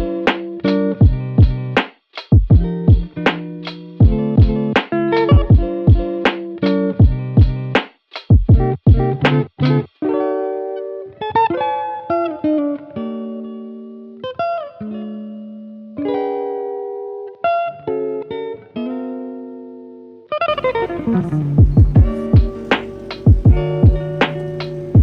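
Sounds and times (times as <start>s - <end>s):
plucked electric guitar melody: 0.0s - 1.8s, 2.5s - 7.8s, 8.5s - 25.0s.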